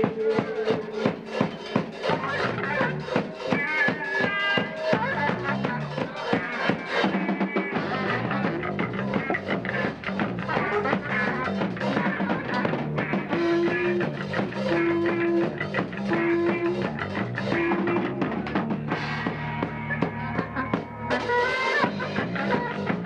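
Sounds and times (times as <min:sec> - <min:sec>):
bass drum beat: 0:00.0 - 0:23.0
rock band playing: 0:00.0 - 0:23.0.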